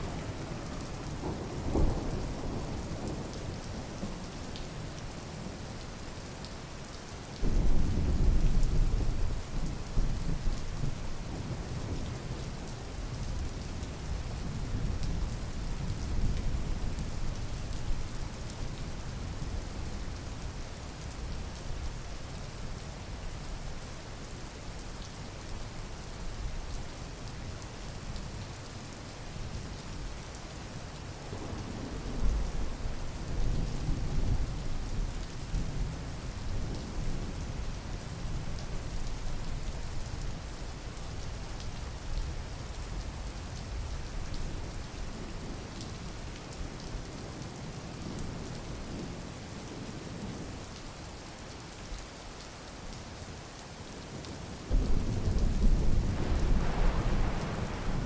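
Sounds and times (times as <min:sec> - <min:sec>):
steady rain falling: 0:00.0 - 0:58.0
thunder rumbling: 0:54.7 - 0:58.0.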